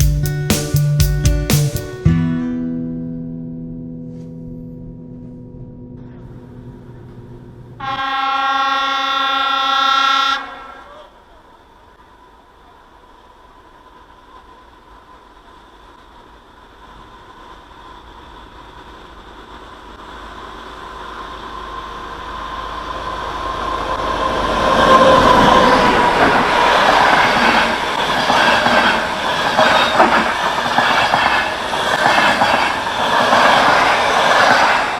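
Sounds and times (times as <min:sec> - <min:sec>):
train passing: 0:06.3 - 0:34.9
train wheels clattering on rails: 0:24.6 - 0:34.9.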